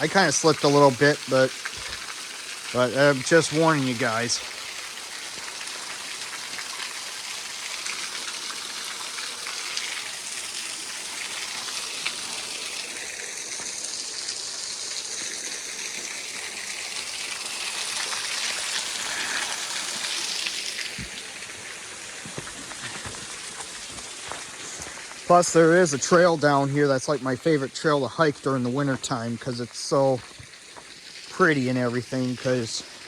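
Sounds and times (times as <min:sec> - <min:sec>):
waterfall rushing and splashing: 0:00.0 - 0:02.0, 0:02.7 - 0:04.6.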